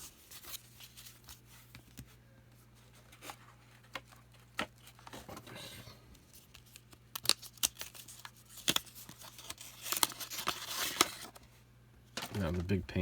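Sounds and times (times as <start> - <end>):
wrapper crinkling and tearing: 6.4 - 11.4, 12.2 - 12.8.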